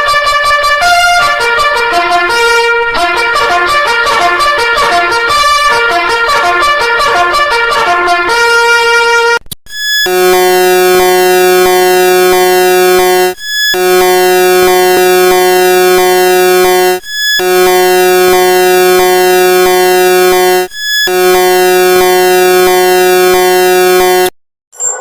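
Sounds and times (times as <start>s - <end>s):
harsh synthesized alarm tone: 0.0s - 25.0s.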